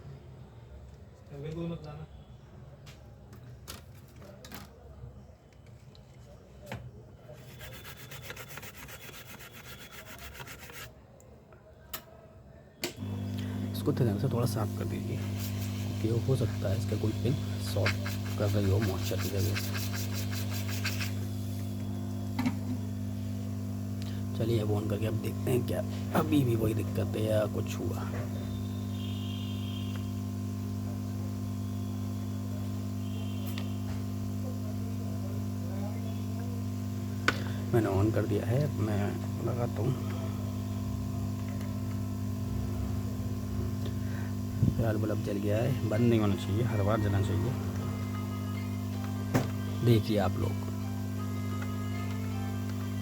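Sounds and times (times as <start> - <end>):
rapid scrubbing strokes: 7.4 - 10.9, 17.5 - 21.2
electrical mains hum: 11.5 - 53.0.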